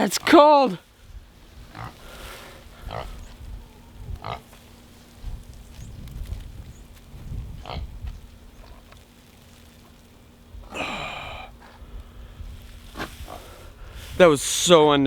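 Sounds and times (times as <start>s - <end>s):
pig grunting and snuffling: 1.7s - 2.2s, 2.8s - 3.4s, 4.2s - 4.5s.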